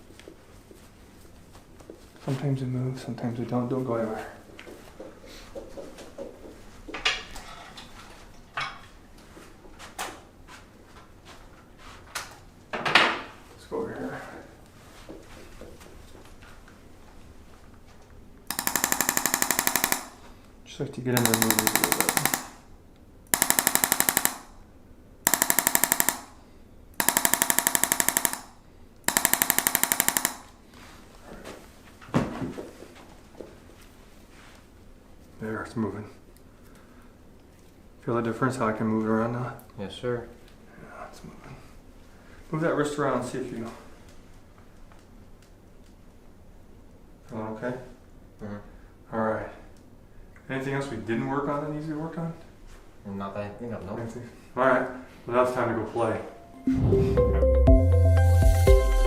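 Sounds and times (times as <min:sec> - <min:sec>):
adjusting instrument rapid clicking: 0:18.5 - 0:20.2, 0:21.2 - 0:22.6, 0:23.3 - 0:24.5, 0:25.3 - 0:26.3, 0:27.0 - 0:30.5
sharp clicks and knocks: 0:21.2 - 0:22.6.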